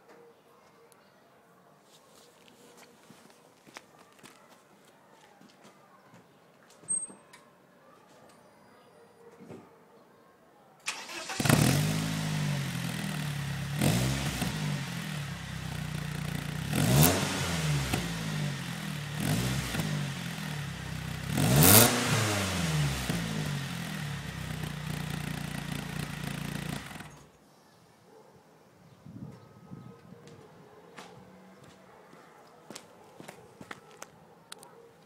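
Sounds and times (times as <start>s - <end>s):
car engine revving and idling: 11.0s - 27.3s.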